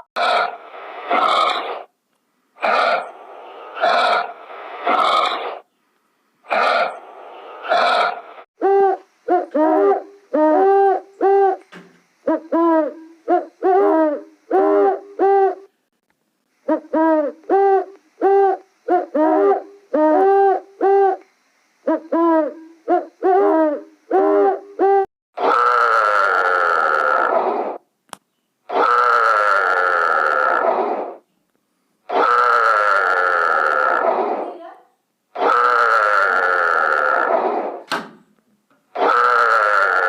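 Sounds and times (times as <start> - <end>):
animal calling: 0.0 - 1.9, 2.6 - 5.6, 6.5 - 11.6, 21.9 - 27.8, 28.7 - 31.2, 32.1 - 34.5, 35.3 - 37.8, 38.9 - 40.0.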